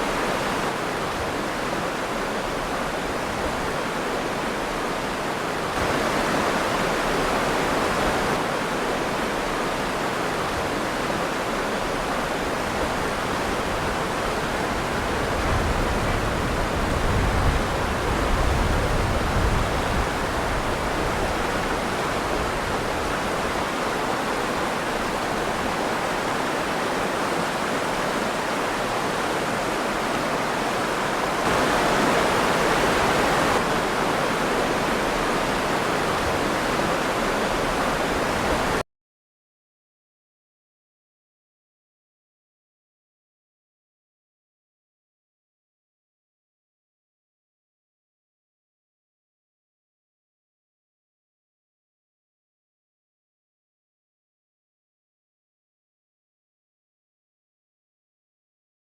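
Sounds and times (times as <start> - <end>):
river water rushing and splashing: 0.0 - 38.8.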